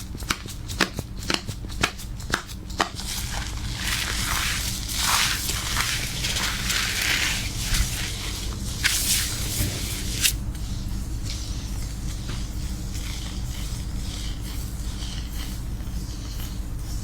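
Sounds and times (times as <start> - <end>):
fingers scratching through hair: 2.8 - 10.4
steady low hum: 2.9 - 16.3.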